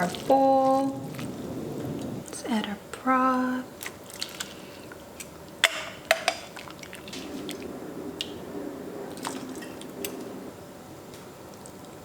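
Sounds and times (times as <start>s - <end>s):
broth splashing into a bowl: 3.8s - 4.8s, 9.1s - 10.2s.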